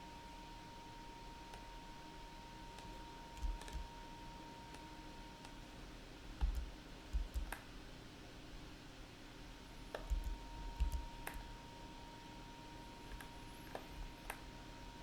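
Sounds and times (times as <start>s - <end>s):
mouse and keyboard clicks: 2.8s - 3.9s, 6.4s - 7.7s, 9.9s - 11.5s.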